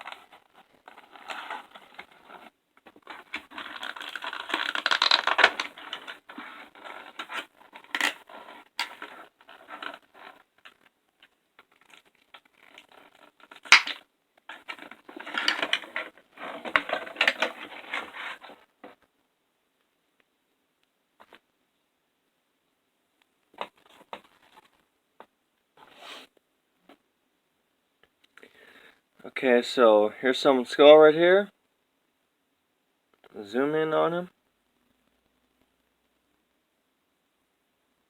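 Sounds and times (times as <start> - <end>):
plastic and cardboard packaging crinkling: 0.0 - 18.8.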